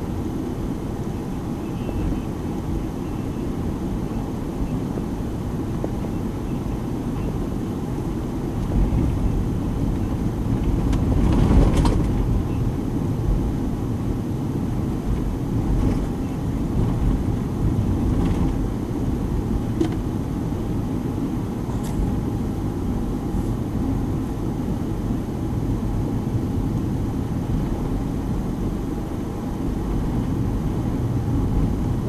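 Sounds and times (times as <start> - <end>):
engine droning: 0.0 - 32.0.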